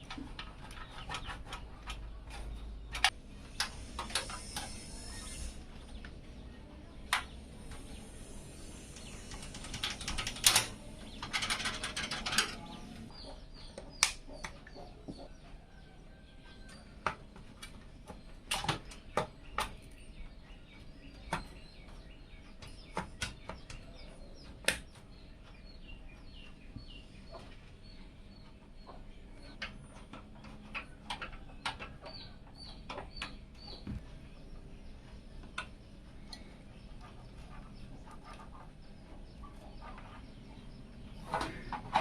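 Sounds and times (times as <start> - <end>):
hard parts clicking and knocking: 0.0 - 6.2, 7.0 - 14.1
small birds chirping: 0.0 - 42.0.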